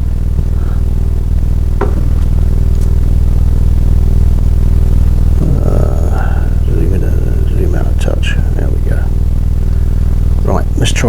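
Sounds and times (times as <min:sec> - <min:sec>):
sharp knock: 0:01.8 - 0:02.9.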